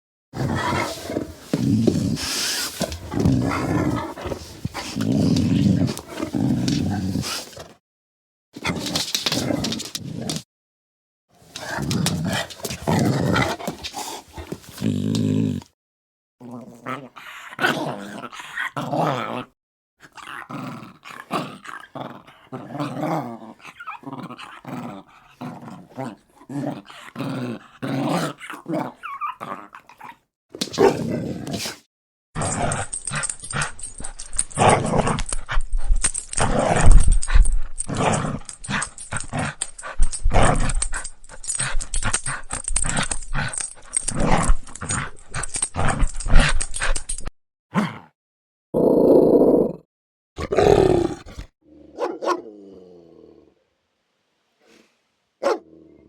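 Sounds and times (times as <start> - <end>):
dogs growling: 0.4 - 7.6, 11.6 - 15.7, 32.4 - 48.0, 50.4 - 53.4.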